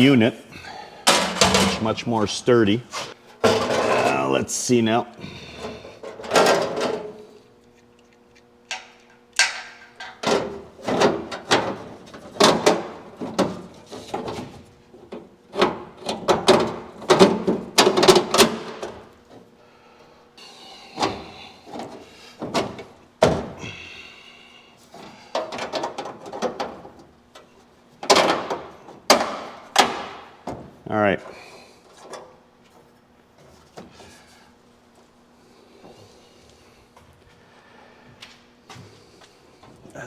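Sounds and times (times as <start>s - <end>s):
sheet metal clanking: 1.1s - 2.1s.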